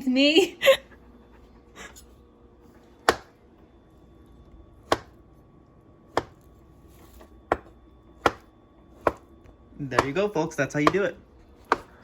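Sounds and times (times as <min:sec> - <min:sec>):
knife chopping onto cutting board: 0:03.0 - 0:03.3, 0:04.8 - 0:05.2, 0:06.1 - 0:06.5, 0:07.2 - 0:12.0.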